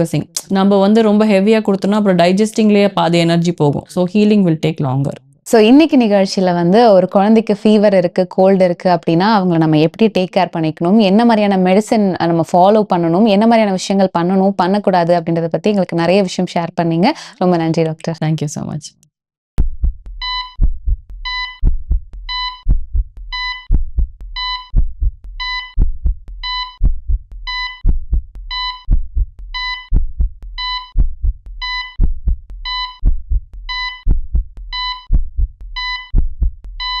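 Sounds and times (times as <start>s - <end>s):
deep heartbeat thumps: 19.6s - 37.0s
short high monitor beep: 20.2s - 20.6s, 21.3s - 21.6s.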